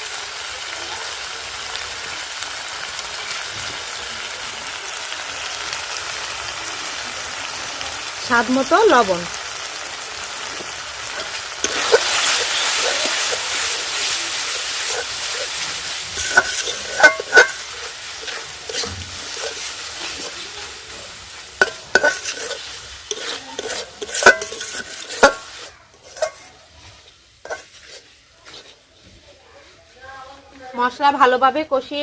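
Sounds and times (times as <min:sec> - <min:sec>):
paste sizzling in oil: 0:00.0 - 0:32.0
spatula scraping pan: 0:10.4 - 0:30.5.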